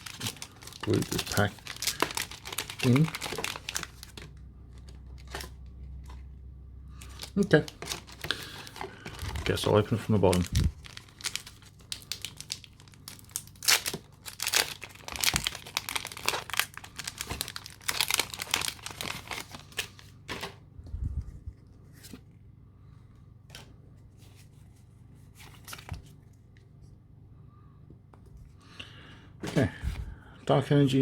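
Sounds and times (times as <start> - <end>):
foil wrapper tearing and crinkling: 0.0 - 4.4, 7.0 - 20.4.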